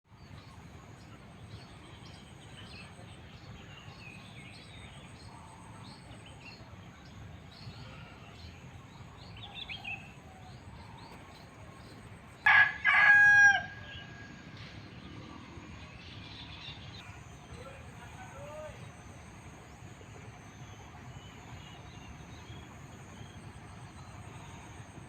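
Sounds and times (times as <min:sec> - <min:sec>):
small birds chirping: 0:00.1 - 0:12.5, 0:13.8 - 0:25.0
rooster crowing: 0:12.4 - 0:14.4.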